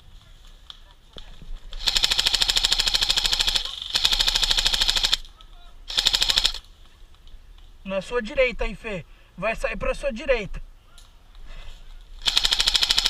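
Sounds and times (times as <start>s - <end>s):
airsoft gun firing bursts: 1.8s - 5.3s, 5.9s - 6.6s, 12.2s - 13.0s.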